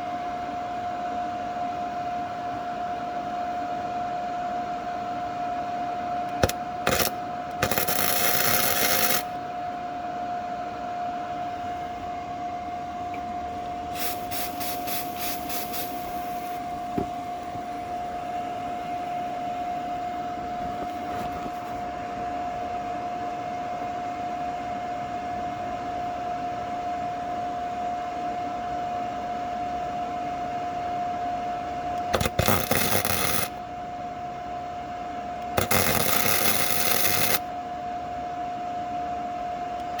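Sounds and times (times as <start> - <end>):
steady high whine: 5.6 - 22.7, 32.0 - 33.6, 35.4 - 37.6
welder arcing crackling buzz: 6.3 - 9.4, 13.9 - 17.7, 32.0 - 33.6, 35.4 - 37.5.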